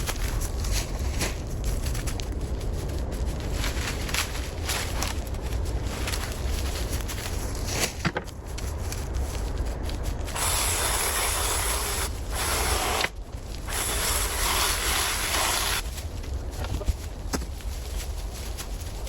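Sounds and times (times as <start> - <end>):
spray hissing in bursts: 10.3 - 13.1, 13.7 - 15.8.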